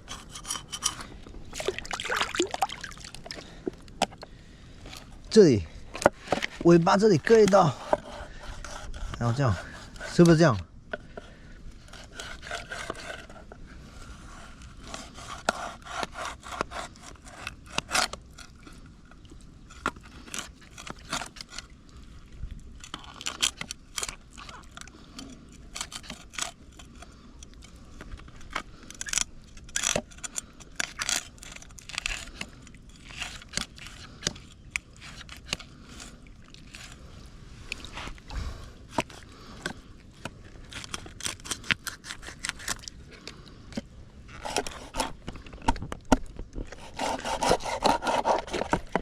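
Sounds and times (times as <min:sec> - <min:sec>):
knife scraping fish: 0:00.0 - 0:03.3, 0:07.2 - 0:10.4, 0:11.8 - 0:18.7, 0:19.7 - 0:21.8, 0:22.8 - 0:37.1, 0:38.9 - 0:45.6, 0:46.6 - 0:49.0.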